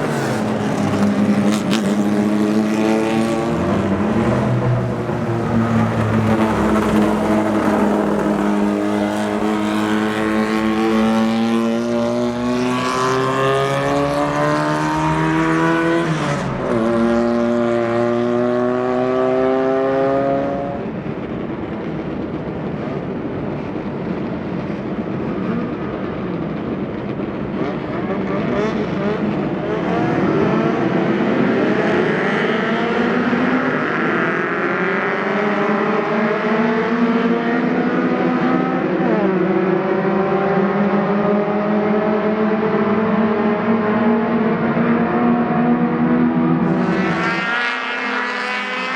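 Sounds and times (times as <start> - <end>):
racing car engine accelerating: 0.0 - 20.8, 27.4 - 48.9
rough engine noise: 0.0 - 32.4
car engine approaching: 0.0 - 48.9.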